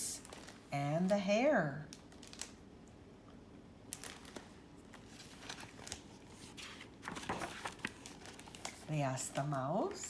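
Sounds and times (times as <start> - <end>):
book pages rustling and turning: 3.9 - 10.0.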